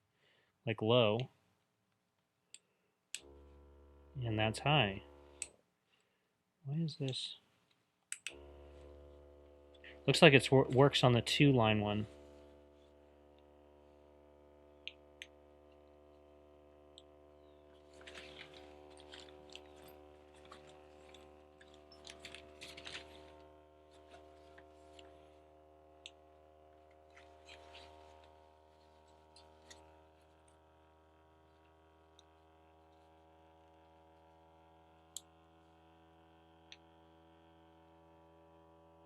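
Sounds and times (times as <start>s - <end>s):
clicks and rustling of handling: 16.9s - 25.3s.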